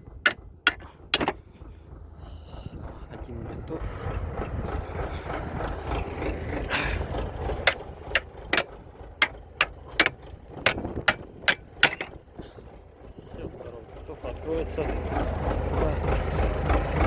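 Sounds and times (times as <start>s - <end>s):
tractor engine idling: 0.0s - 17.0s
sharp knocks: 0.2s - 1.4s, 7.7s - 12.2s.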